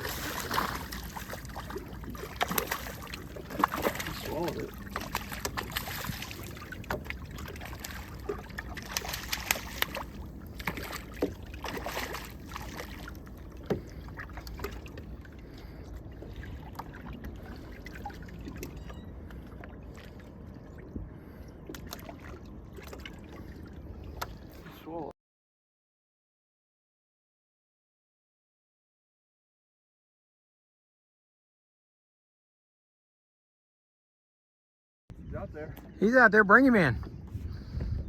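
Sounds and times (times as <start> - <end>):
water lapping against boat hull: 0.0 - 25.1, 35.6 - 38.0.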